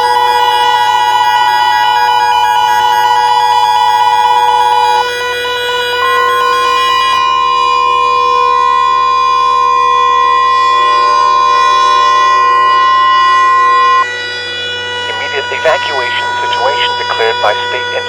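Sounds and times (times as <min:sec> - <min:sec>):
electronic data buzz: 0:00.0 - 0:07.3, 0:10.0 - 0:18.0
steady electronic alert tone: 0:15.0 - 0:18.0.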